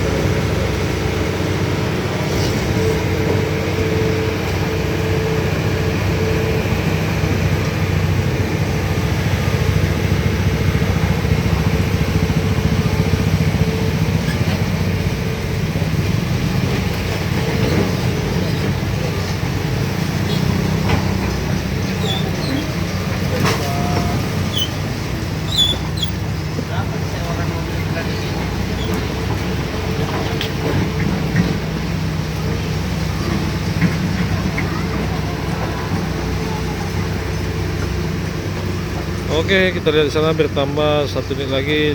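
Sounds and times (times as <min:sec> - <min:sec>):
heavy truck engine running: 0:00.0 - 0:41.9.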